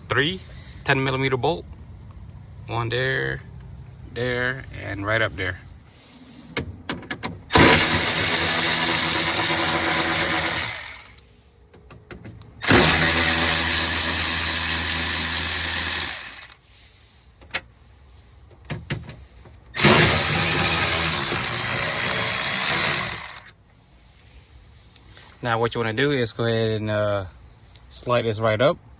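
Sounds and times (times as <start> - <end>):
cordless power tool running: 7.5 - 11.2, 12.6 - 16.6, 19.8 - 23.5.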